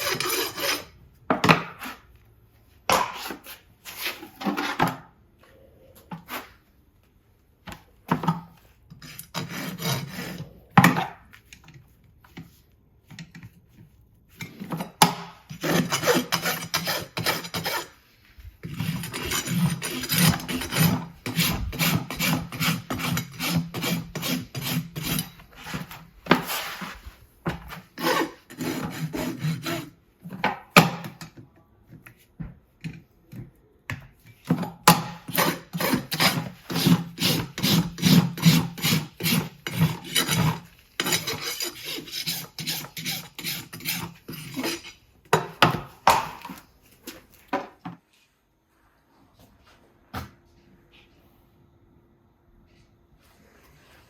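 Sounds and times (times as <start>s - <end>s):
rasp filing hoof: 0.0s - 0.9s, 9.1s - 10.6s, 15.5s - 18.0s, 18.6s - 26.9s, 28.0s - 30.0s, 34.9s - 45.0s.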